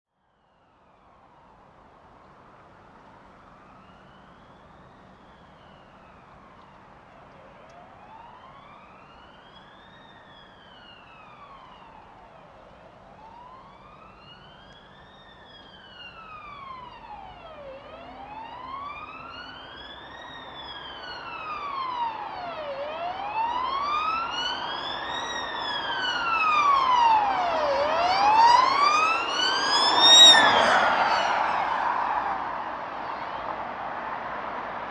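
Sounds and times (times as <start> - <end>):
road noise: 0.7 - 34.9
ambulance siren wailing: 7.5 - 33.6.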